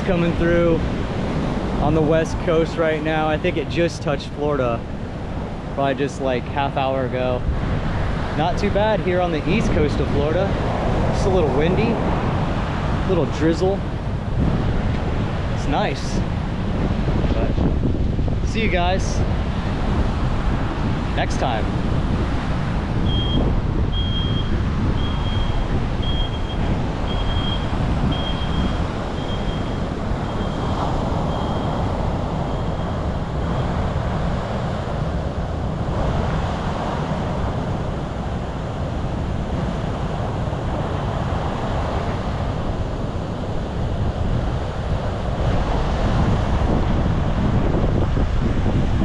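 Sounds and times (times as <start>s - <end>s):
ocean surf breaking: 0.0s - 49.0s
wind buffeting microphone: 0.0s - 49.0s
short high beeps: 23.1s - 31.8s.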